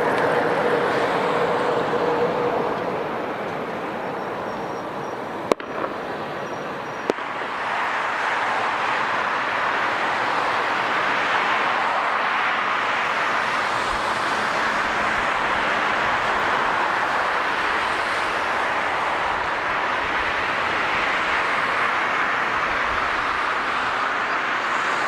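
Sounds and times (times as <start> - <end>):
jet airliner engine noise: 0.0 - 25.0
sharp clicks: 5.5 - 7.2.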